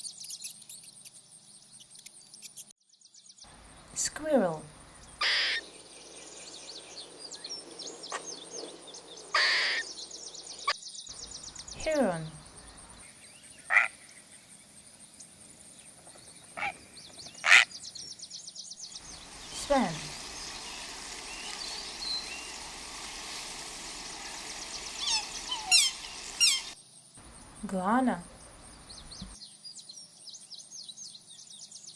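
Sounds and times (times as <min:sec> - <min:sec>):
small birds chirping: 0:00.0 - 0:29.4
squirrel calling: 0:03.5 - 0:05.7, 0:07.9 - 0:10.0, 0:10.6 - 0:14.1, 0:16.1 - 0:18.0, 0:19.0 - 0:29.4
swan honking: 0:05.1 - 0:05.6, 0:09.4 - 0:09.8, 0:13.7 - 0:14.0, 0:17.4 - 0:17.7, 0:19.1 - 0:29.4.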